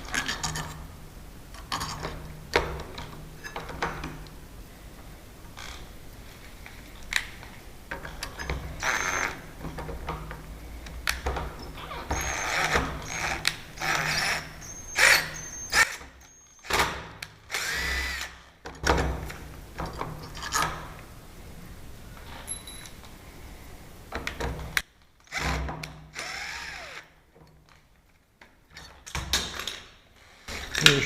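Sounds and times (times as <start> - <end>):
power drill whining: 8.8 - 9.4, 12.1 - 16.7, 17.5 - 18.5, 25.3 - 27.1.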